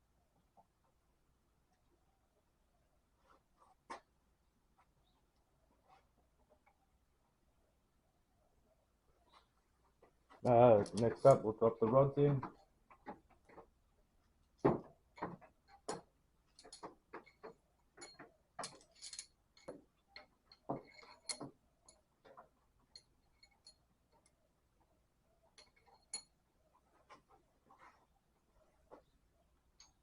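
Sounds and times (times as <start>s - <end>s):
metal rods clicking and tapping: 10.4s - 13.7s, 14.8s - 24.4s, 25.5s - 26.3s, 29.8s - 30.0s.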